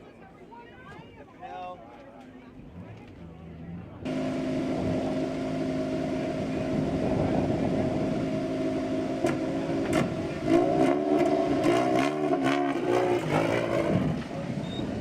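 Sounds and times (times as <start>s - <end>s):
race vehicle engine revving: 4.0s - 15.0s.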